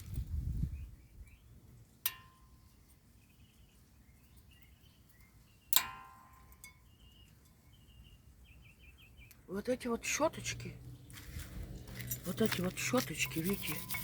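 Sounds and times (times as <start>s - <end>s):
faint bird chirps: 2.5s - 5.8s, 6.5s - 9.5s
metal tools clinking: 11.7s - 14.0s.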